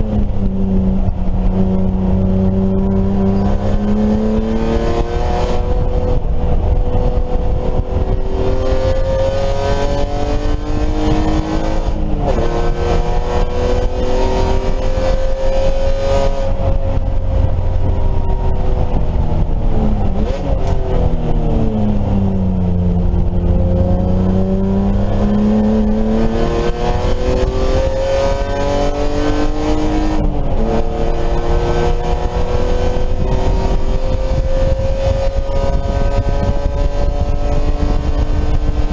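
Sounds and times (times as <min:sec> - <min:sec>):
race car engine revving: 0:00.0 - 0:38.9.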